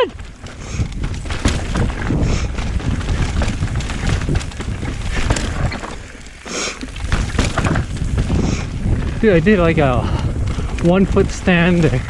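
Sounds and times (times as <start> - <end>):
bike rolling on rough dirt trail: 0.0 - 12.0
wind buffeting microphone: 0.0 - 12.0
bike clicks and knocks: 0.2 - 9.2.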